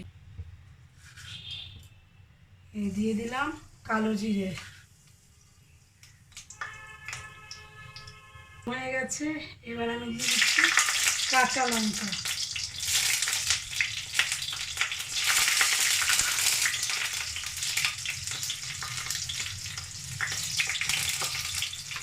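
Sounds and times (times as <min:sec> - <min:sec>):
spices sizzling in oil: 0:10.1 - 0:22.0.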